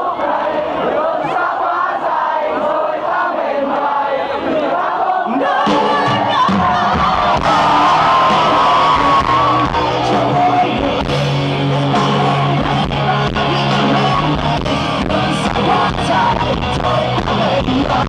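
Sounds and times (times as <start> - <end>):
crowd noise: 0.0 - 18.0
person singing: 4.2 - 18.0
rock band playing: 5.5 - 18.0.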